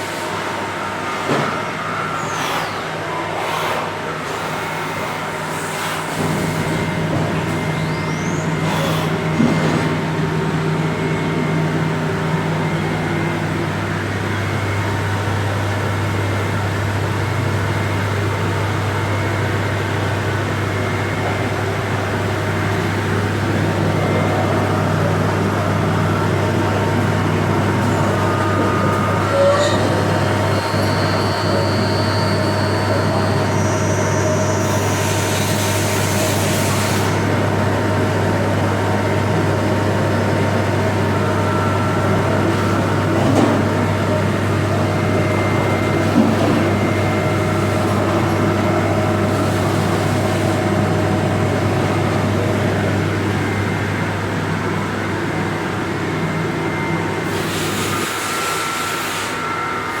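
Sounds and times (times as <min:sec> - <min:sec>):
machine whining tones: 0:00.0 - 1:00.0
low machine hum: 0:06.1 - 0:36.3.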